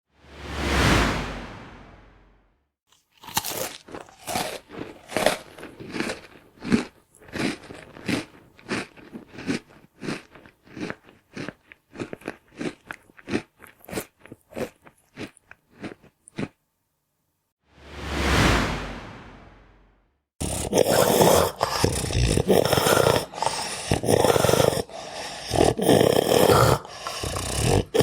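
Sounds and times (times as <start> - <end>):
person munching crunchy food: 2.9 - 16.6, 20.4 - 28.0.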